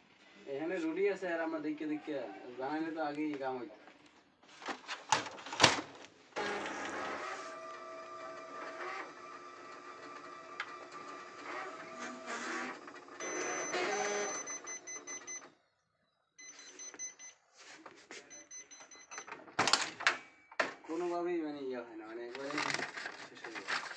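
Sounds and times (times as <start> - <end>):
photocopier whirring: 5.1 - 15.3, 22.2 - 23.9.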